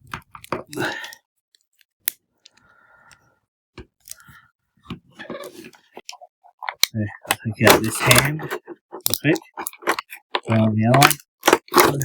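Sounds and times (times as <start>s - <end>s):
plastic parts clicking: 5.2s - 12.0s
small plastic scrapes: 5.2s - 12.0s.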